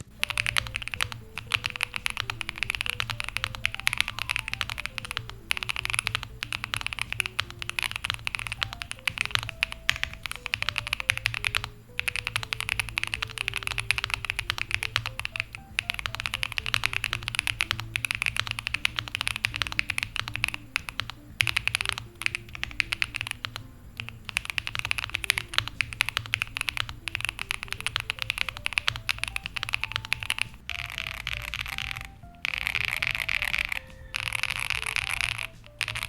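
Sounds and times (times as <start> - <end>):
fast typing on mechanical keyboard: 0.0 - 36.0
soft background music: 0.0 - 36.0.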